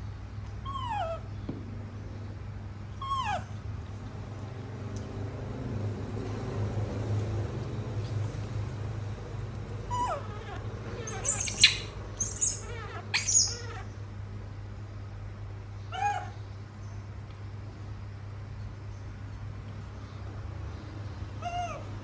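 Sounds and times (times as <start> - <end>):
monkey squealing: 9.9 - 13.9.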